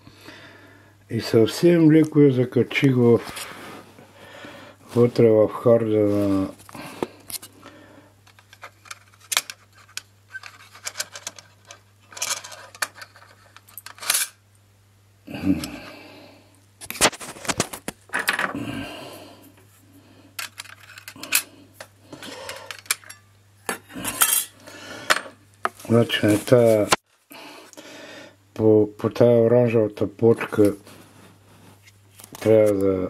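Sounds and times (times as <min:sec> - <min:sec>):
metal parts clicking and clinking: 0:08.3 - 0:14.4, 0:20.4 - 0:21.5, 0:22.4 - 0:23.3
scraping and rustling: 0:25.7 - 0:27.0.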